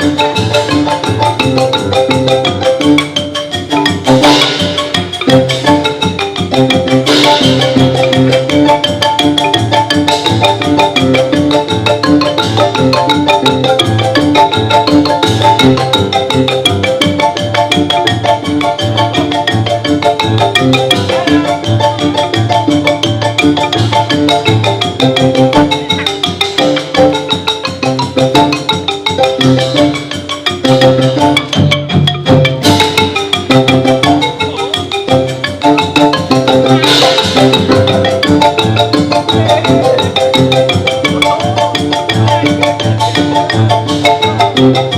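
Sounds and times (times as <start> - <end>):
xylophone playing fast runs: 0.0 - 44.9.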